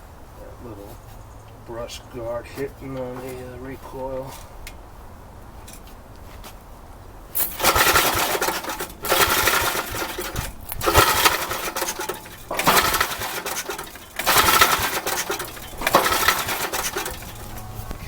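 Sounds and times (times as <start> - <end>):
engine popping and backfiring: 7.4 - 18.0
tiller engine running rough: 7.4 - 18.0.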